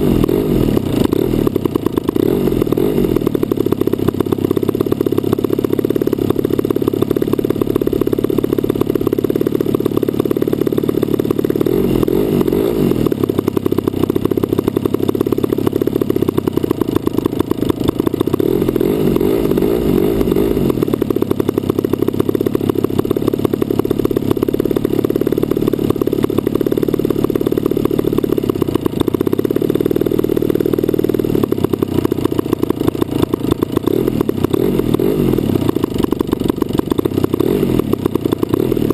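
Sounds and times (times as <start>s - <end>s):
muffled model plane engine running: 0.0s - 38.9s.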